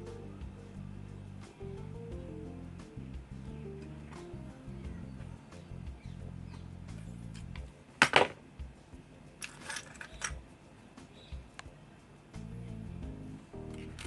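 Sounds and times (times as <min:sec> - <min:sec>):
background music: 0:00.0 - 0:14.0
hard objects clacking: 0:07.3 - 0:08.4, 0:09.4 - 0:10.4.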